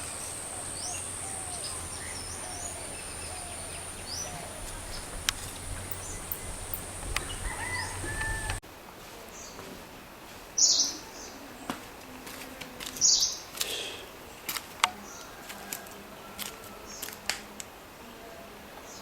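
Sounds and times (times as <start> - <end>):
high harsh bird calls: 0.0 - 8.6.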